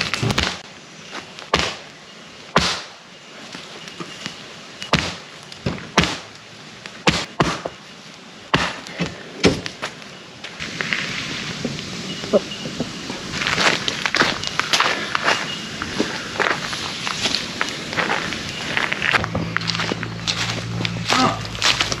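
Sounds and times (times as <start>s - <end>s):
firewood being chopped: 0.0s - 0.6s, 1.5s - 1.8s, 2.6s - 2.9s, 4.8s - 6.3s, 7.0s - 7.8s, 8.5s - 9.8s.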